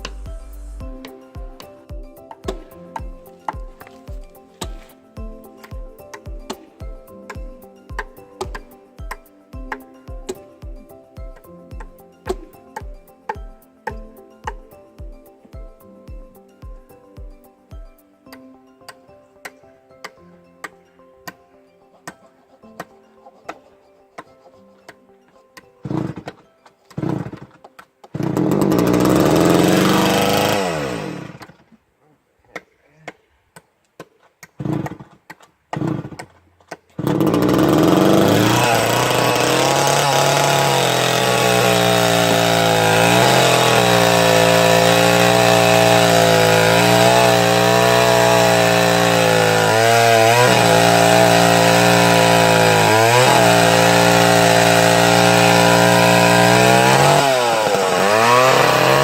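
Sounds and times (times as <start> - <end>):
chainsaw pull-started and running: 25.8 - 31.6, 34.6 - 36.4, 37.0 - 59.0.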